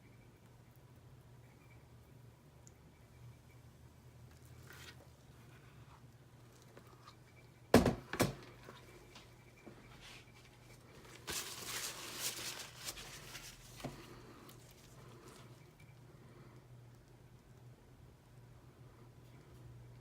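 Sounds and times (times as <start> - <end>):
rustling and scraping: 4.3 - 7.2, 8.5 - 15.6.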